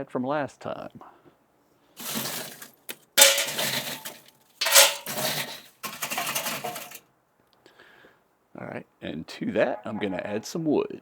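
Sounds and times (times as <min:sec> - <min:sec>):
charcoal lumps clattering into chimney starter: 0:02.0 - 0:07.0.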